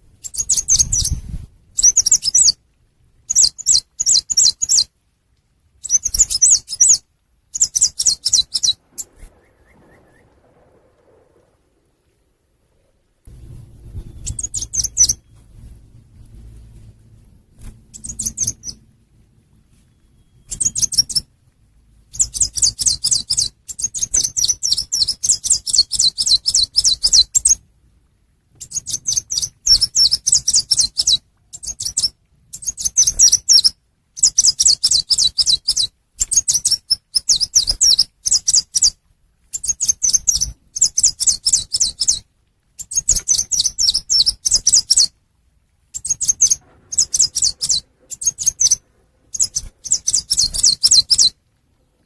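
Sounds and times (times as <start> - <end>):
songbird high thin chirps: 0.2 - 2.6, 3.3 - 4.9, 5.8 - 10.3, 14.0 - 15.5, 17.9 - 18.9, 19.8 - 21.3, 22.1 - 27.6, 28.6 - 39.0, 39.6 - 45.1, 45.9 - 51.4.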